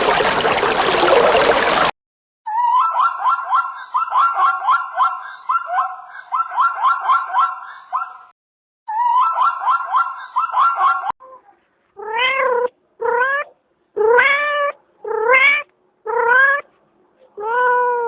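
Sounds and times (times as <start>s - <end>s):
cat meowing: 12.0s - 16.7s, 17.4s - 18.0s.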